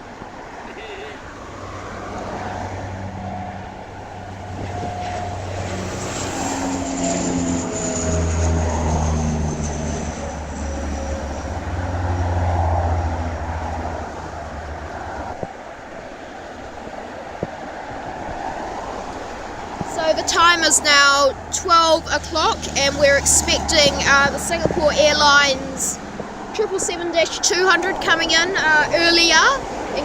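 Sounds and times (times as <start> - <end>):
airliner engines droning past: 0.0 - 30.0.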